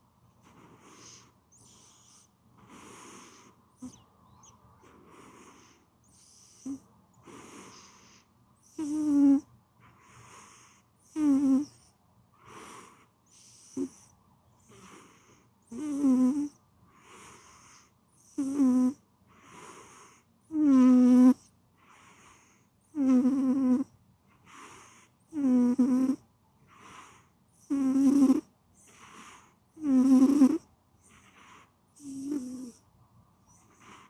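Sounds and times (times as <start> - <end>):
cat snoring: 0.0 - 34.0.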